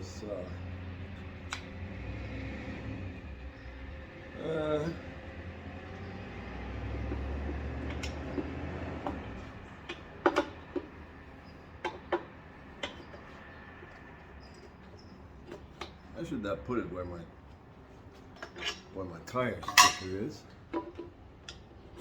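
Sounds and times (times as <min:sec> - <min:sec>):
metal tools clicking on wheel rim: 0:07.0 - 0:16.1, 0:18.3 - 0:22.0.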